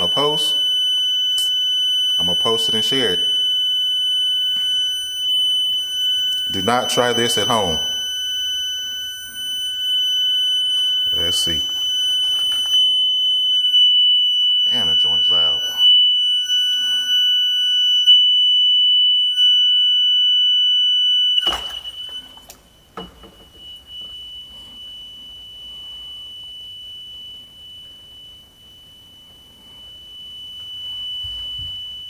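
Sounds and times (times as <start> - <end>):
smoke detector high-pitched tone: 0.0 - 32.0
splash into water bucket: 21.4 - 22.8.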